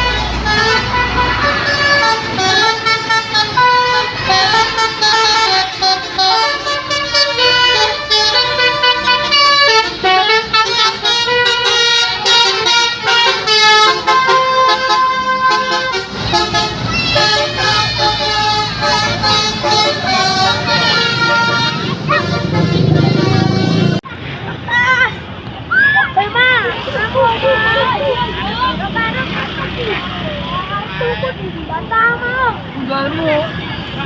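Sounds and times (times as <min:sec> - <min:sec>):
bus horn playing a tune: 0:00.0 - 0:24.0.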